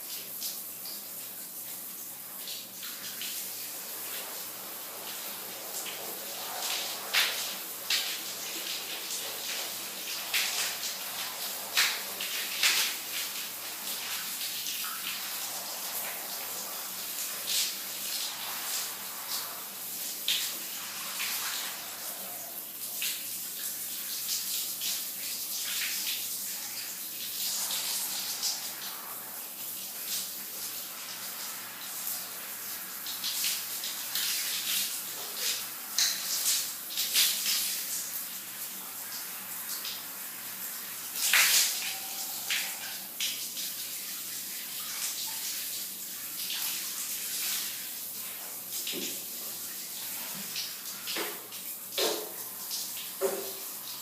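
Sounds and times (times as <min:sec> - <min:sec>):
shower spray hiss: 0:00.0 - 0:54.0.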